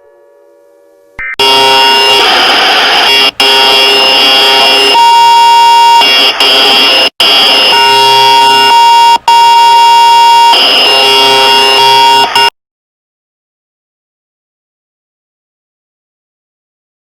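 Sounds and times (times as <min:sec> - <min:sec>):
high beep: 0:01.2 - 0:12.5
blaring electronic alarm tones: 0:01.4 - 0:12.5.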